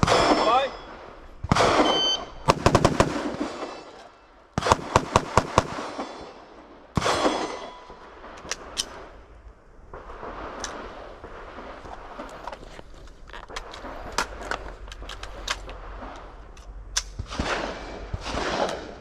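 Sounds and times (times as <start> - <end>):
rifle shots: 0.0 - 9.1, 17.1 - 19.0
pistol shots: 1.5 - 6.4, 7.0 - 7.9.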